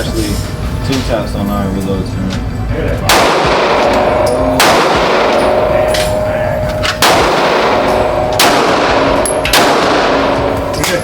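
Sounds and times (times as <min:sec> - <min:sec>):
pistol shots ringing: 0:03.0 - 0:11.0
fainter gunshots: 0:03.1 - 0:05.6, 0:06.9 - 0:11.0.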